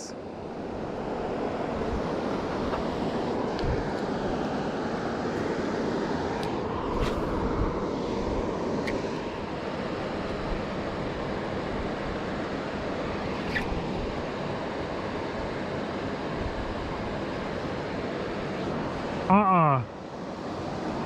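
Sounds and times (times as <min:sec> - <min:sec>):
river water flowing: 0:00.2 - 0:21.0
wind on microphone: 0:00.6 - 0:04.5, 0:06.7 - 0:15.6.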